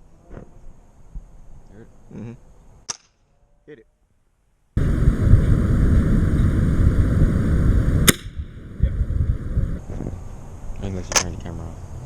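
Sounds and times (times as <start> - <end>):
loud rumbling noise: 4.8 - 9.9
air rifle shot: 8.0 - 8.5.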